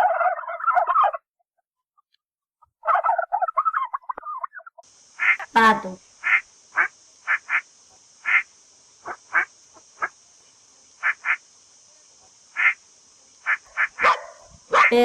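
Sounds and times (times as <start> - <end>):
steady high hiss: 4.8 - 15.0
duck quacking: 5.2 - 5.5, 12.6 - 12.8, 13.4 - 14.2.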